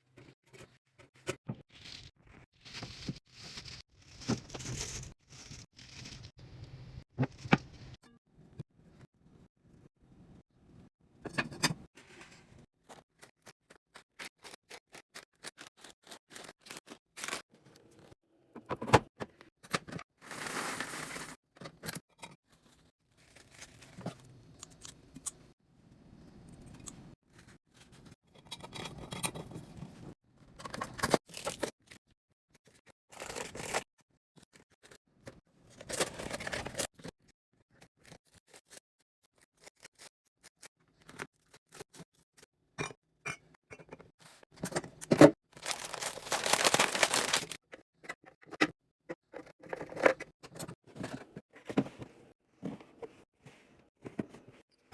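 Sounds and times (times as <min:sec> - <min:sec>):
packaging rustling and tearing: 0:45.5 - 0:47.6.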